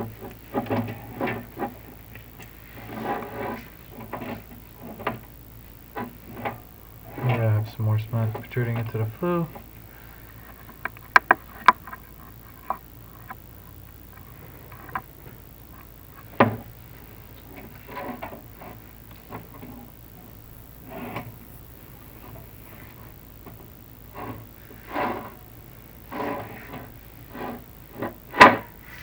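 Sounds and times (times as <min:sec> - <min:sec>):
cable scraping on flue tiles: 0:00.0 - 0:05.3, 0:22.2 - 0:29.0.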